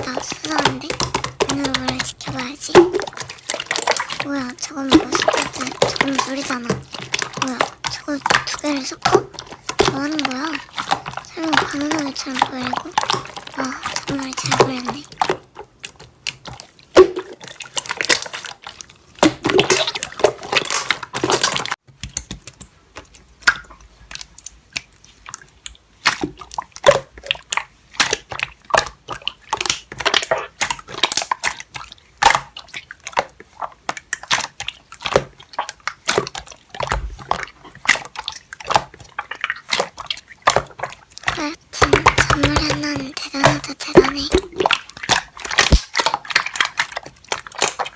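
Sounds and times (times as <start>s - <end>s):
slime squished by hand: 0.0s - 47.9s.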